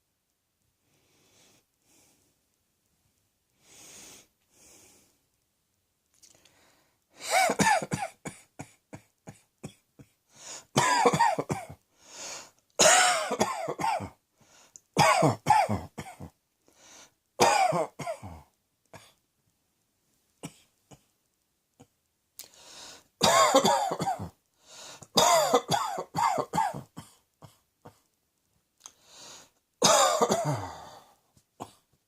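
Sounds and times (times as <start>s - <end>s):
person coughing: 7.2s - 10.2s, 10.8s - 11.8s, 12.8s - 14.2s, 15.0s - 16.4s, 17.4s - 19.2s, 23.2s - 24.4s, 25.1s - 28.0s, 29.8s - 31.9s.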